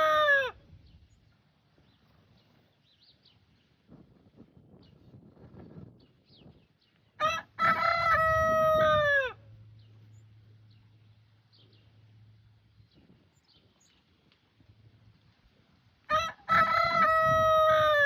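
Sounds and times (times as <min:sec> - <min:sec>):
rooster crowing: 0:00.0 - 0:00.6, 0:07.2 - 0:09.4, 0:16.1 - 0:18.0.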